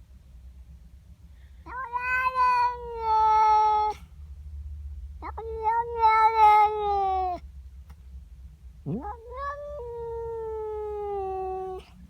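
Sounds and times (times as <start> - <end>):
cat yowling: 1.7 - 4.0, 5.2 - 7.4, 8.8 - 12.0.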